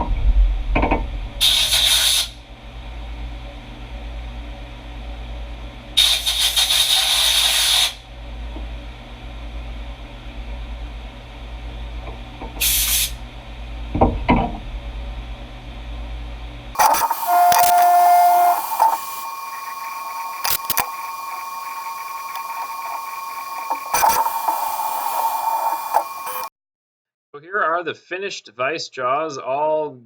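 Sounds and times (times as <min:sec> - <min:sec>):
compressed air hissing: 0:01.4 - 0:02.4, 0:12.6 - 0:13.2, 0:16.8 - 0:26.5
milling machine humming: 0:16.8 - 0:26.5.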